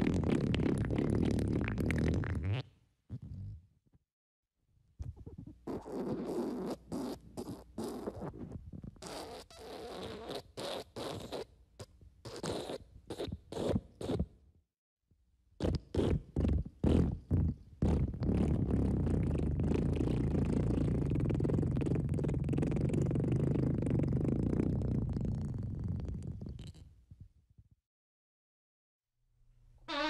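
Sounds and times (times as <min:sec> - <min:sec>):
farts: 0:00.0 - 0:03.7, 0:05.0 - 0:14.3, 0:15.6 - 0:26.9.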